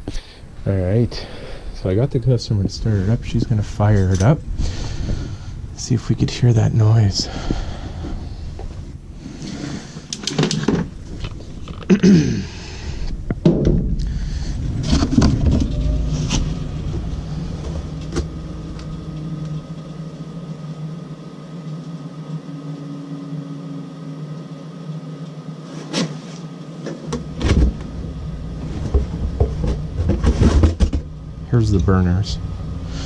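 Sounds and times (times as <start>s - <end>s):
low rumble: 0.0s - 10.1s, 12.4s - 21.6s, 27.2s - 33.0s
furnace motor hum: 0.0s - 33.0s.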